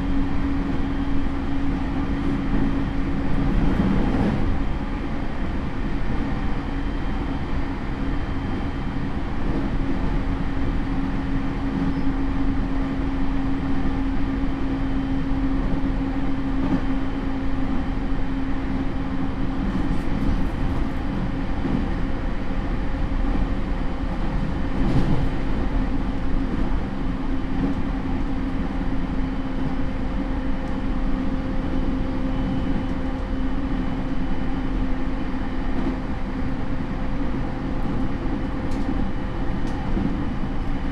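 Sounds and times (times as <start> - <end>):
train wheels rumbling on rail: 0.0 - 40.9.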